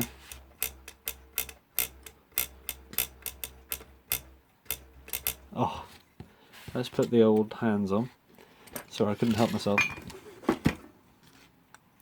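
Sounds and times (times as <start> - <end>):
small metallic clicks: 0.0 - 5.4.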